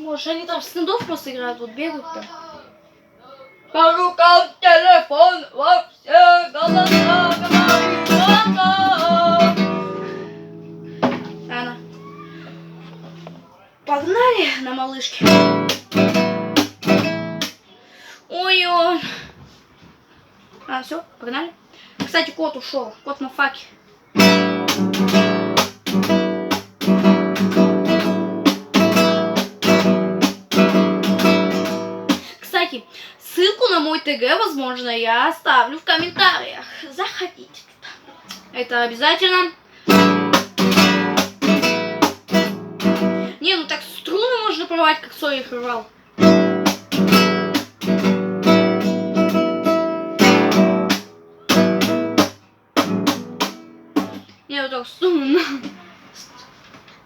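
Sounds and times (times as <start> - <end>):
acoustic guitar strumming: 6.6 - 13.5, 15.2 - 17.6, 24.2 - 32.2, 39.9 - 43.4, 46.2 - 54.3.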